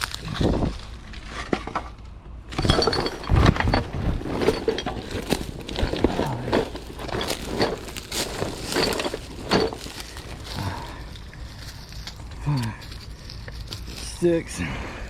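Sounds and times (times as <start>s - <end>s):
glass bottles clinking: 2.5s - 10.9s.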